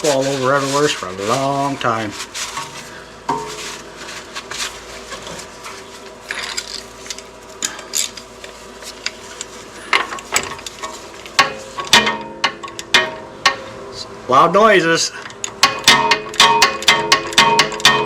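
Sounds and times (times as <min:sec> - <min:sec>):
wiping and rubbing: 0:00.0 - 0:06.2.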